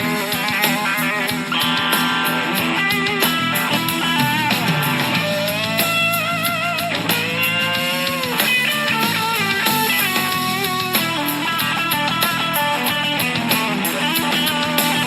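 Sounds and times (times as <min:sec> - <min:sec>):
bass and drums: 0:00.0 - 0:15.0
electric guitar blues-rock: 0:00.0 - 0:15.0.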